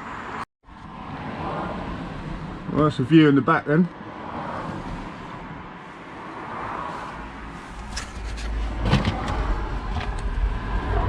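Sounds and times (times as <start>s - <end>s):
scrap metal rustling and knocking: 7.6s - 10.1s
low rumble: 8.6s - 11.0s.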